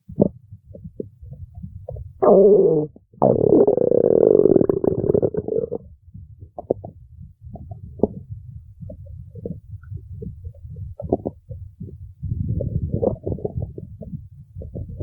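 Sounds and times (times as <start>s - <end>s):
stomach gurgling pops: 0.0s - 15.0s
stomach growling: 0.1s - 15.0s.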